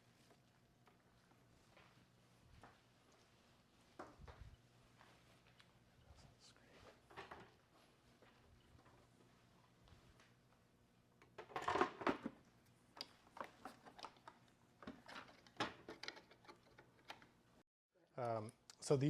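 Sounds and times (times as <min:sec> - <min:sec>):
plastic parts clicking and knocking: 0:11.2 - 0:12.4, 0:13.0 - 0:17.4.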